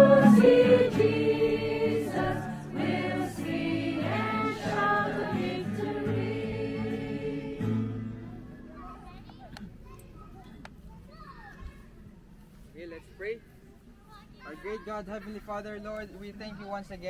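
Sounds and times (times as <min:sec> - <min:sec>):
group singing a hymn: 0:00.0 - 0:08.2.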